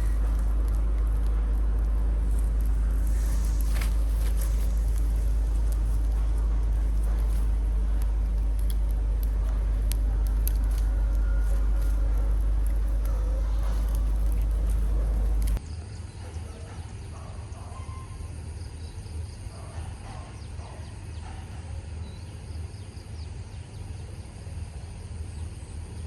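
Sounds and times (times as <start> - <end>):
steady low rumble: 0.0 - 15.7
faint insect drone: 0.0 - 26.0.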